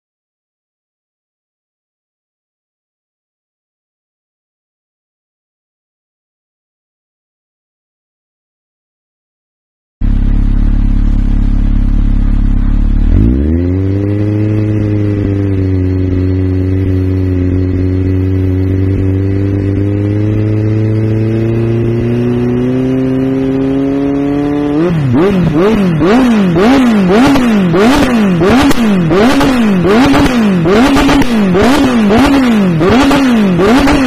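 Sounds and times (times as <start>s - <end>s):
motorcycle engine revving: 10.0s - 34.0s.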